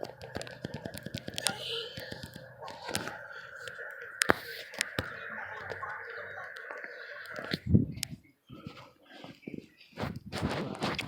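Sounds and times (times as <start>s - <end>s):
outdoor warning sirens: 0.0s - 7.8s
sharp clicks: 0.0s - 8.1s.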